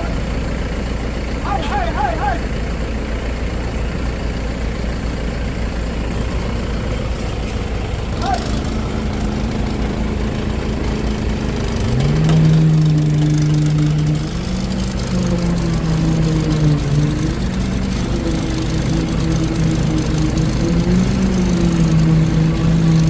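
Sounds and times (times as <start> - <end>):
engine running and revving: 0.0 - 23.0.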